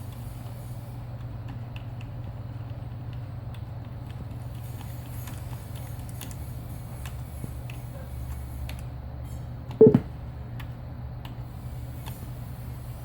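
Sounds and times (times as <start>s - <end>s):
steady low hum: 0.0s - 12.8s
computer loud pitched noise: 9.8s - 10.0s.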